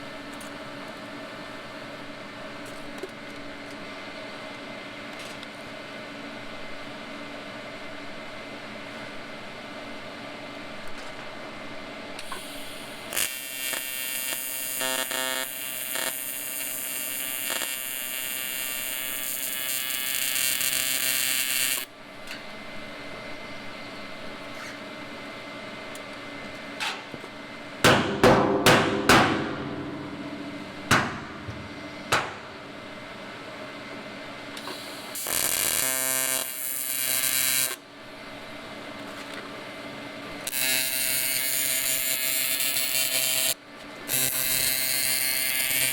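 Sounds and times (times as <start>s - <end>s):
welding arc buzzing: 12.2s - 22.0s, 28.8s - 32.8s, 34.6s - 37.8s, 40.4s - 45.9s
machine hum: 21.9s - 34.6s
sharp knocks: 27.8s - 32.6s.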